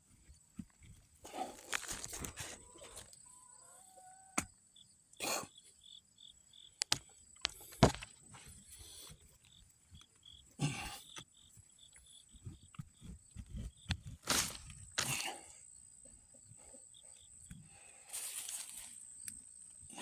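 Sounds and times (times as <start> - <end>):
rustling and scraping in soil: 0.0 - 3.3, 6.9 - 15.6, 16.5 - 20.0
insect chirping: 1.2 - 20.0.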